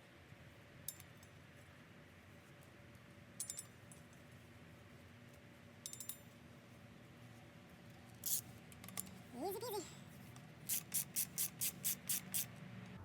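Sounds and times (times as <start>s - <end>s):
ratchet clicking: 8.2s - 8.4s, 10.7s - 12.5s.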